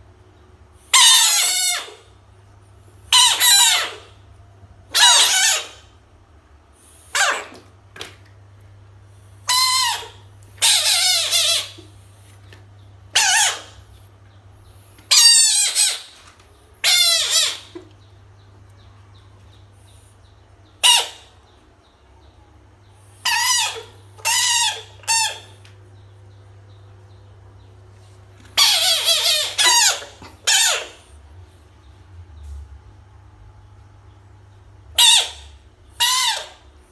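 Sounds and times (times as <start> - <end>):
frog screaming: 0.9 - 2.0, 4.9 - 5.9, 13.1 - 13.8, 16.8 - 17.7.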